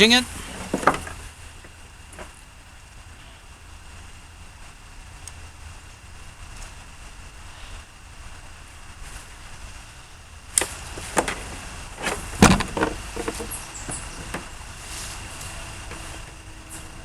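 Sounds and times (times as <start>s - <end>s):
hand tools clattering: 0.0s - 2.3s, 10.6s - 17.0s.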